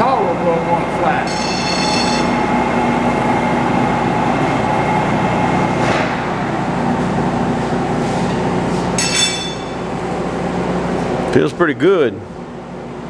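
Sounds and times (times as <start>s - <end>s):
metal lathe running: 0.0s - 11.2s
high squeal from cutting: 1.3s - 2.4s.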